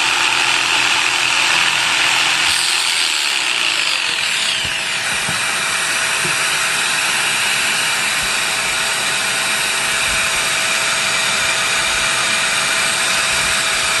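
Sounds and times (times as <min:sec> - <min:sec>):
vacuum rushing hiss: 0:04.1 - 0:14.0.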